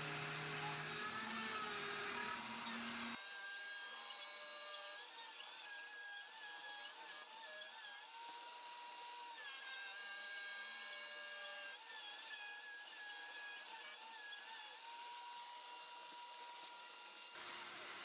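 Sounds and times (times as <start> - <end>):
cnc router whine: 0.0 - 7.0, 14.9 - 18.0.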